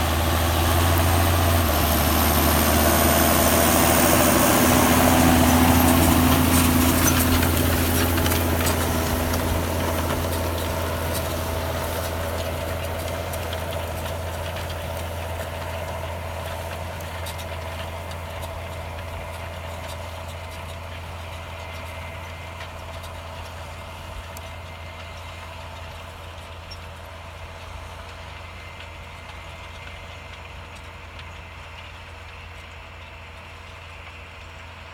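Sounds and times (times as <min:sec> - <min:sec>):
tractor diesel engine running: 0:00.0 - 0:34.9.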